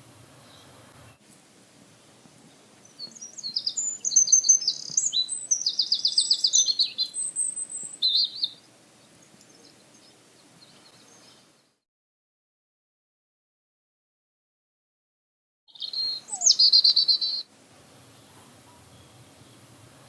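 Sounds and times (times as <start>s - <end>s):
small bird chirping and trilling: 2.8s - 11.7s, 15.7s - 17.5s.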